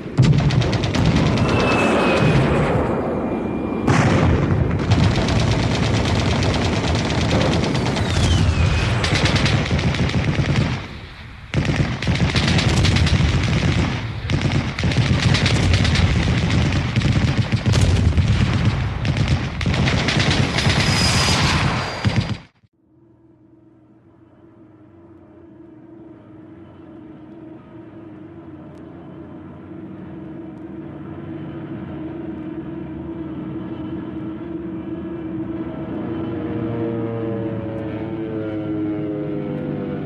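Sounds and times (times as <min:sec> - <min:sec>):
machine-gun and rifle fire: 0:00.2 - 0:02.4, 0:03.9 - 0:22.6.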